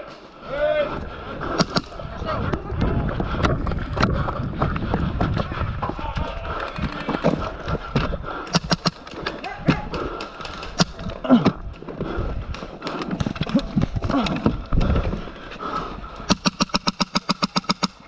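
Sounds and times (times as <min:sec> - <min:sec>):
clicks and rustling: 0:06.1 - 0:18.0.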